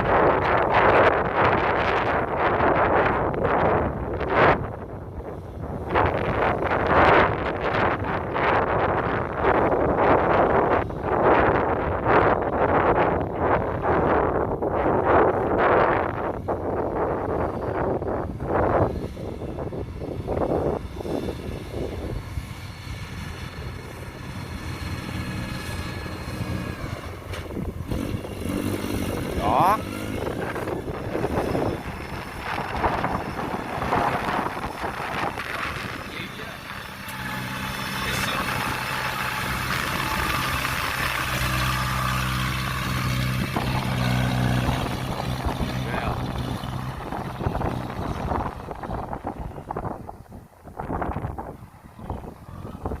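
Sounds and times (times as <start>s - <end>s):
combine harvester engine rumble: 0.0s - 53.0s
threshing machinery clatter: 24.6s - 48.9s.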